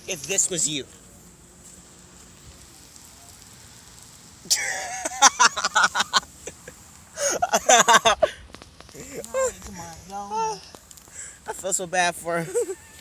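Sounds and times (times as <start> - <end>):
faint steady background noise: 0.0 - 13.0
person laughing: 4.5 - 8.4, 9.0 - 9.7, 12.4 - 13.0.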